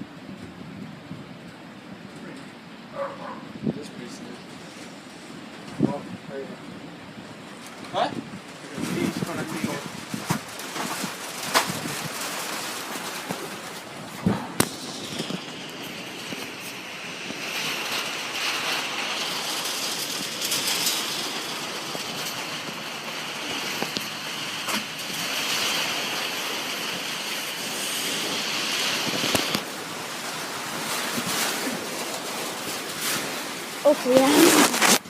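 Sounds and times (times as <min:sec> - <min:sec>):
storm hiss: 0:02.2 - 0:35.0
hailstones cracking on a car: 0:07.4 - 0:35.0.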